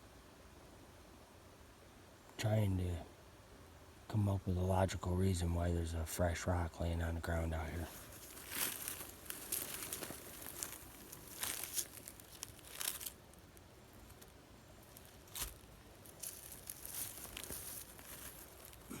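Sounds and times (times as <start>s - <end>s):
dry leaves rustling and crackling: 7.7s - 19.0s.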